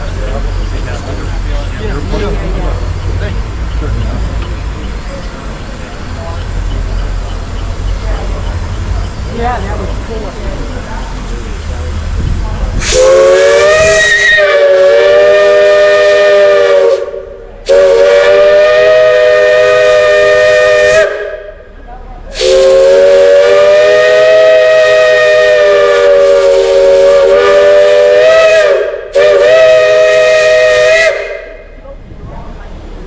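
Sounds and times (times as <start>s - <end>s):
steam hissing: 0.0s - 21.6s, 22.3s - 31.9s
steam whistle chord: 12.8s - 21.4s, 22.4s - 31.5s.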